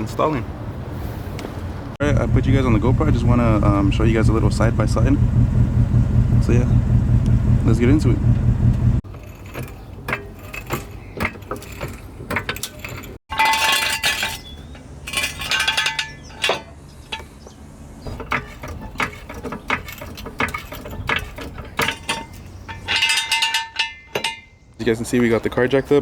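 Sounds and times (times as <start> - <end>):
metal hand tools clinking: 9.1 - 17.5, 18.1 - 24.6.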